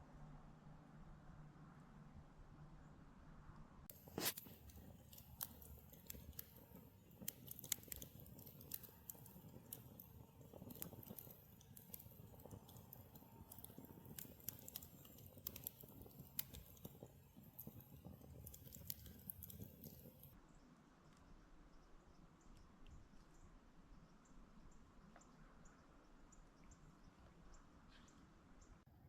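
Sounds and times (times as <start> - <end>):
campfire crackling and popping: 3.9 - 20.4.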